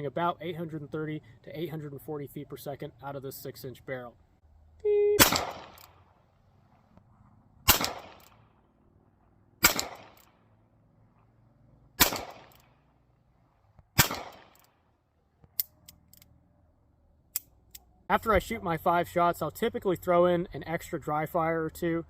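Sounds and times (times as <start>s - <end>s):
revolver gunshots with echo: 5.2s - 6.0s, 7.6s - 8.6s, 9.6s - 10.4s, 12.0s - 12.8s, 14.0s - 14.6s.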